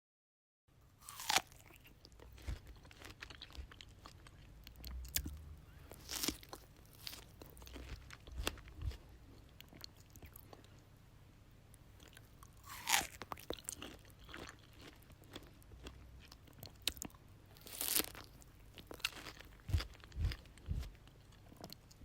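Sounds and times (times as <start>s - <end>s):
person biting strawberries: 1.0s - 9.0s, 12.1s - 15.0s, 16.7s - 20.9s
wet squelchy chewing: 12.0s - 22.0s.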